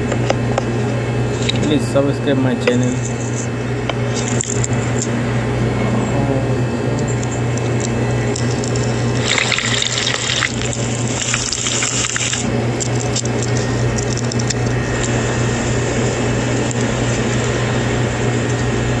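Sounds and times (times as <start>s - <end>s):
steady low hum: 0.0s - 19.0s
crackling: 7.2s - 17.6s
liquid splashing into hot pan: 9.2s - 12.4s.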